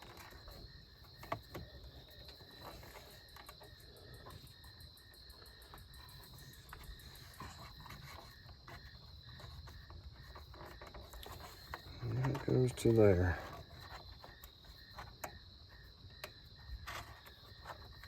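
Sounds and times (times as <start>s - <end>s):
insect chirring: 0.0s - 18.0s.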